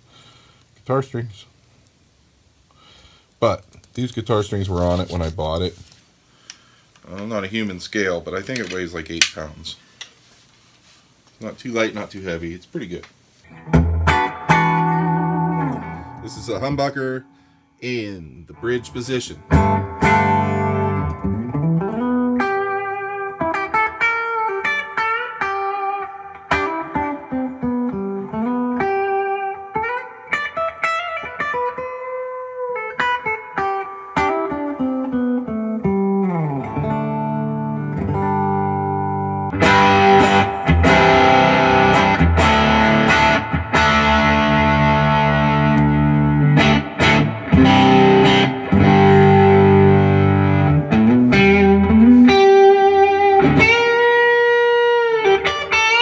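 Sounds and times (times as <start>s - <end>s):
electric guitar through amp: 13.5s - 17.5s, 18.5s - 56.0s.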